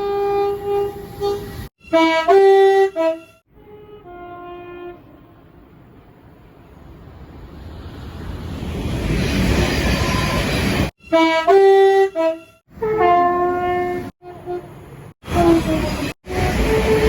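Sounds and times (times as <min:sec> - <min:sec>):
train air horn: 0:00.0 - 0:05.4, 0:11.0 - 0:17.0
train rumbling: 0:05.0 - 0:17.0.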